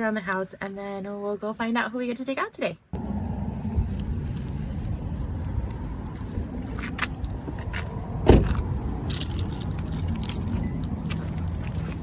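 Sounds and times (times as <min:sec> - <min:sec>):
car engine rumbling: 0:03.0 - 0:12.0
loud thump: 0:08.3 - 0:08.6.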